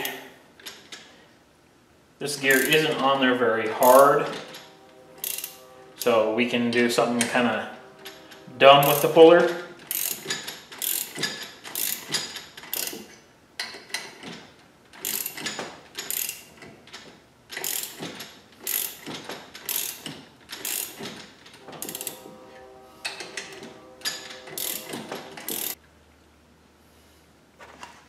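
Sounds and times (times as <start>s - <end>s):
ratchet wrench clicking: 2.5s - 2.8s, 3.8s - 5.6s, 8.8s - 9.2s, 9.8s - 14.2s, 15.0s - 16.7s, 17.5s - 21.1s, 21.8s - 22.2s, 24.0s - 25.8s.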